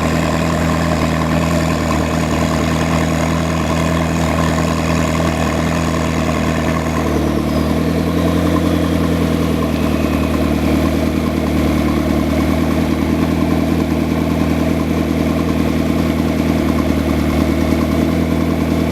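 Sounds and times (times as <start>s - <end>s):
sports car engine idling: 0.0s - 18.9s
faint high whine: 7.4s - 12.0s.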